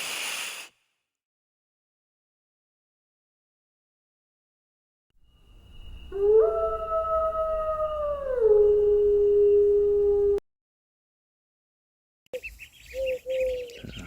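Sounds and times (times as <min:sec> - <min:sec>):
wolf howling: 0:05.9 - 0:10.4.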